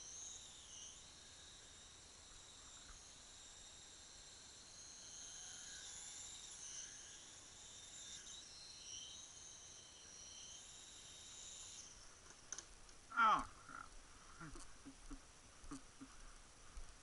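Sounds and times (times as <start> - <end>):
remote control helicopter whine: 0.0 - 12.2.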